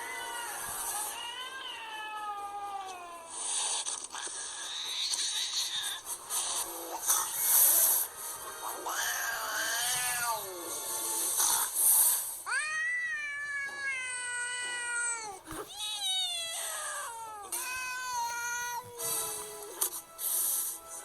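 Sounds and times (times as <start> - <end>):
cat yowling: 0.0 - 3.4, 8.8 - 10.7, 12.4 - 19.8.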